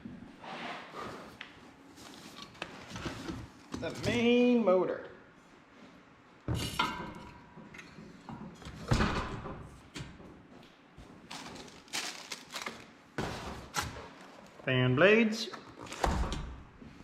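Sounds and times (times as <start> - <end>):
packaging being handled: 11.3 - 14.6.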